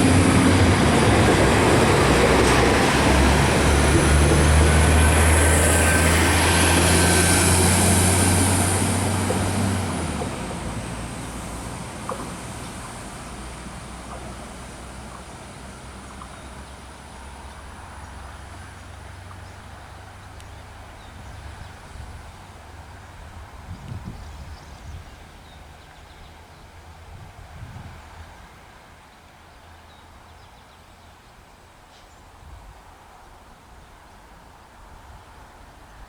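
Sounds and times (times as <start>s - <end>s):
diesel train engine drone: 0.0s - 28.5s.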